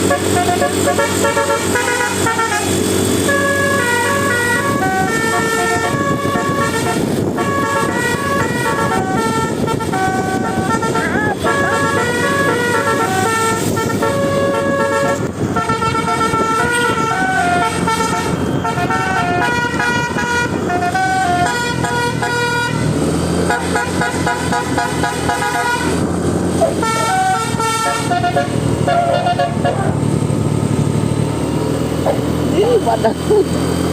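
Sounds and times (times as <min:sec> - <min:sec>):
musical air horn tune: 0:00.0 - 0:30.0
bus engine: 0:00.0 - 0:33.9.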